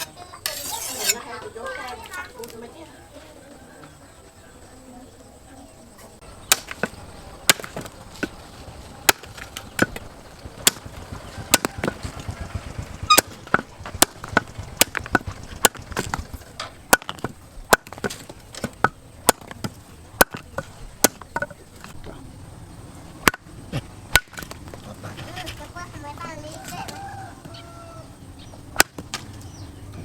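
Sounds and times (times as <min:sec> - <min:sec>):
knife chopping a palm branch: 0:06.4 - 0:08.4, 0:09.0 - 0:12.3, 0:13.1 - 0:21.5, 0:23.2 - 0:23.4, 0:24.1 - 0:24.7, 0:28.8 - 0:29.3.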